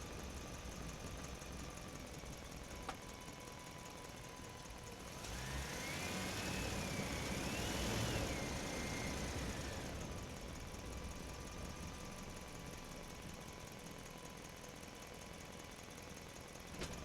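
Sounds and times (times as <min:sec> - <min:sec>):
engine whine: 0:04.4 - 0:12.0.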